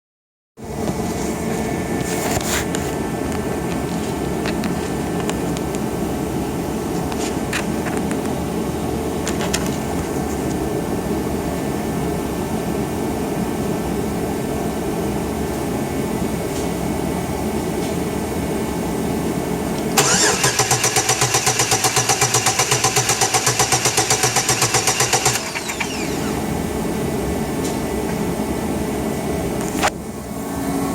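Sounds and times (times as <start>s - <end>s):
steady mechanical hum: 0.6s - 30.9s
engine cranking by starter: 20.0s - 26.5s.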